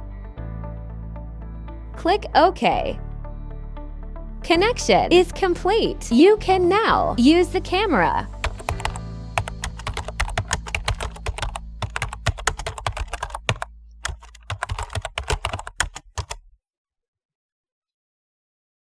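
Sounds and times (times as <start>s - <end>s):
rapid irregular clicking: 8.4s - 16.4s.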